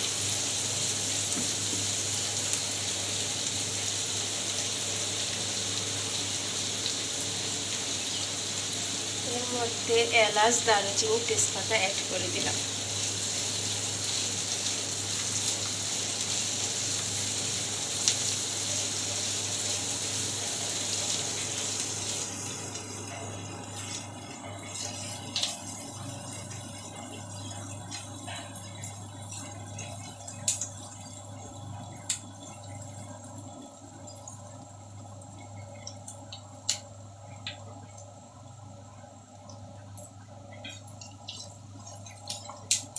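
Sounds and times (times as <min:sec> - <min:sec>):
onions sizzling in hot oil: 0:00.0 - 0:37.9, 0:38.5 - 0:42.9
oil crackles and pops: 0:13.0 - 0:42.9.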